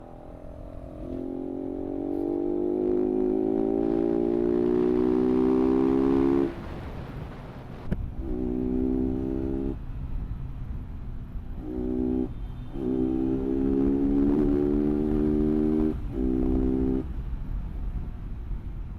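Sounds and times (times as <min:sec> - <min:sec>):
motorcycle engine accelerating: 0:00.0 - 0:06.8, 0:08.2 - 0:09.8, 0:11.6 - 0:17.1.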